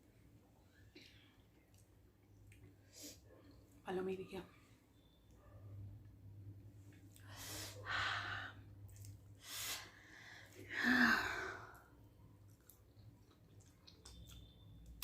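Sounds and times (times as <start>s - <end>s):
person breathing while eating: 7.1s - 8.8s, 9.4s - 12.0s.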